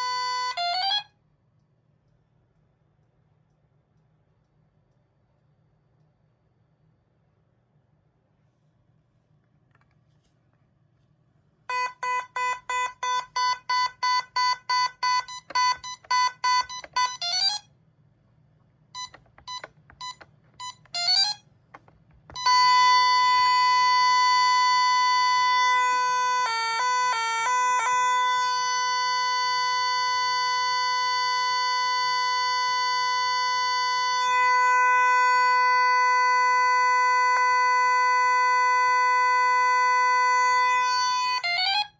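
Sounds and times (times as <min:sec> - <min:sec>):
rapid alarm beeps: 0:11.7 - 0:17.4.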